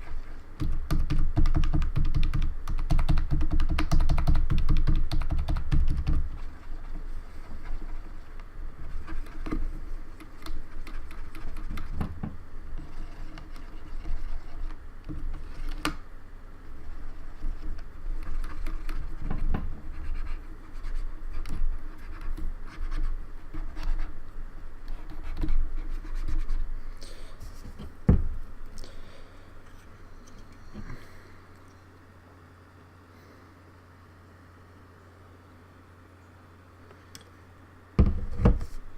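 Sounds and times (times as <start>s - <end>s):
keyboard keys clicking: 0.6s - 6.2s.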